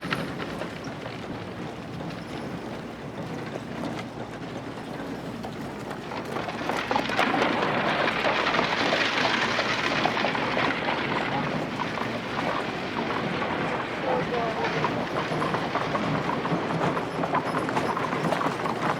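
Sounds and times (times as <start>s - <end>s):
voices: 12.1s - 16.3s.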